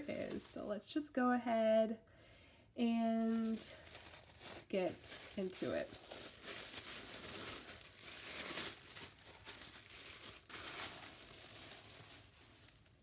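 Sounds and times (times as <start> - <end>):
paper wrapping rustling and crinkling: 0.0 - 0.7, 3.3 - 13.0.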